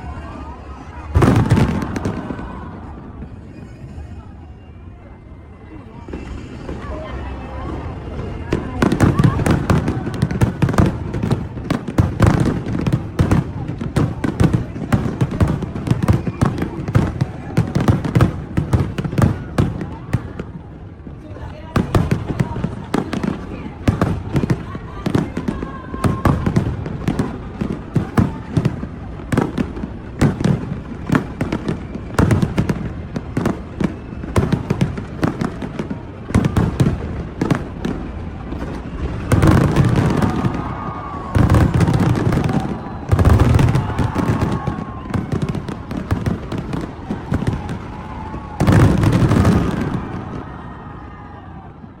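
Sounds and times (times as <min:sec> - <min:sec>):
fireworks bangs: 0:00.0 - 0:04.6, 0:06.0 - 0:51.9.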